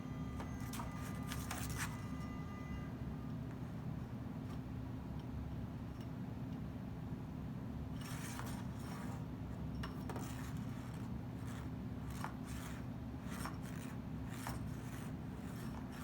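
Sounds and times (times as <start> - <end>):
cockatoo scraping a toy: 8.0 - 9.3, 10.1 - 16.0.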